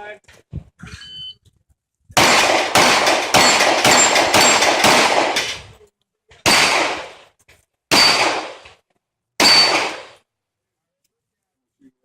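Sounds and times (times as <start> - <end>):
pistol shots: 2.2 - 5.6, 6.4 - 7.3, 7.9 - 8.7, 9.4 - 10.2.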